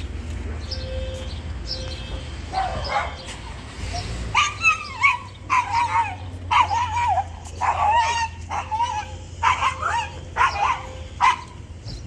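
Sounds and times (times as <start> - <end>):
dog barking and yipping: 2.4 - 11.6.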